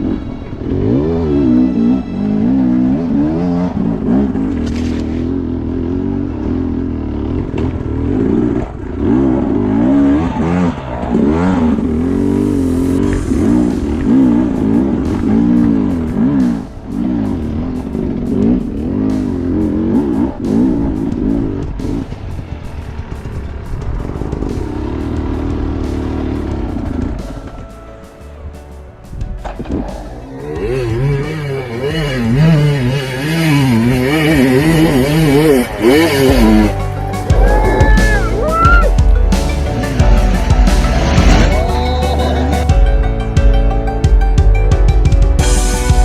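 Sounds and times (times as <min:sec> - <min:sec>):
off-road vehicle engine revving: 0:00.0 - 0:22.4, 0:23.0 - 0:27.6, 0:29.4 - 0:43.1.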